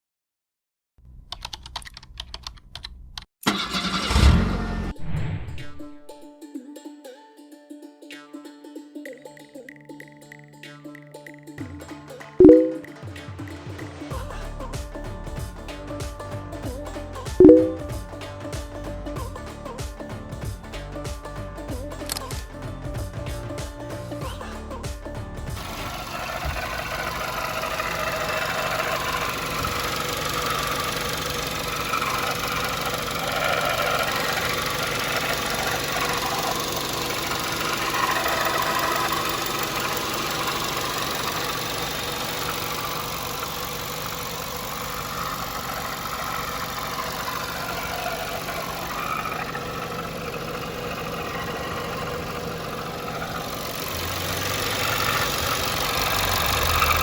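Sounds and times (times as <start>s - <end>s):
car engine idling: 1.0s - 5.0s, 14.1s - 57.0s
rattling whirring pulley: 14.1s - 57.0s.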